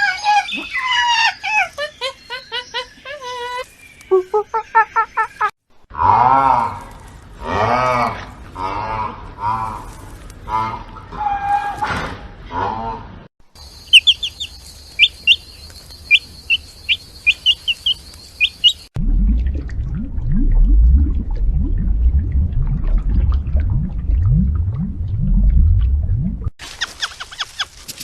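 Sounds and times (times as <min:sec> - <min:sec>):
bird chirping: 0:13.6 - 0:18.9.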